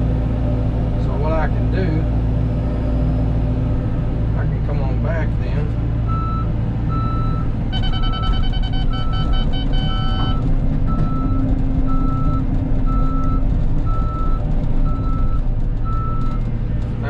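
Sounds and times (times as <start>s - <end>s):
excavator diesel engine running: 0.0s - 17.0s
reversing alarm beeping: 6.1s - 16.4s
higher multi-pitch beeping: 7.0s - 11.3s.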